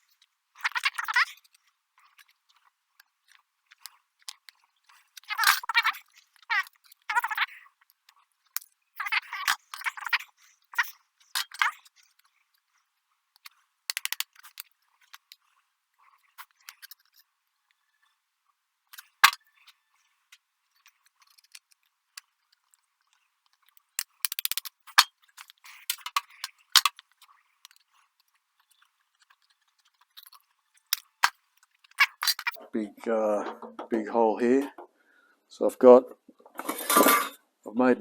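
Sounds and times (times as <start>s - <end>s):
metal and hand tools rattling: 13.9s - 15.3s, 24.0s - 27.1s, 29.2s - 32.6s.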